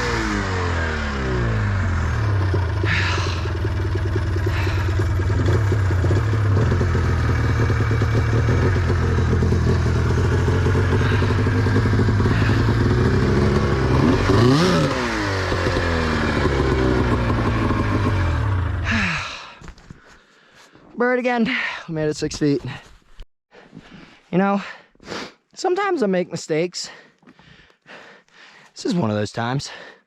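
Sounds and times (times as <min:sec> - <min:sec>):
snowmobile engine revving: 0:00.0 - 0:19.1.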